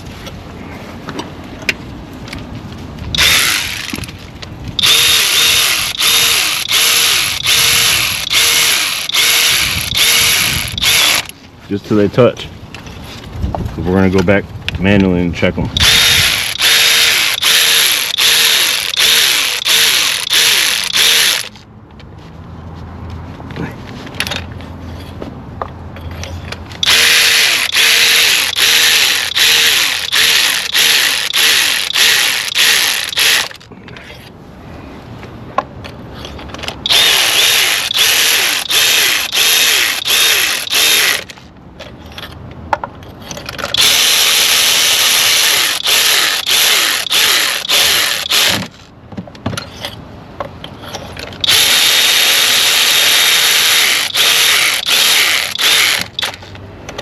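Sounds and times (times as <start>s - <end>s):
cordless power tool running: 3.2s - 4.0s, 4.8s - 11.3s, 15.8s - 21.5s, 26.8s - 33.6s, 36.9s - 41.3s, 43.8s - 48.6s, 51.4s - 56.3s.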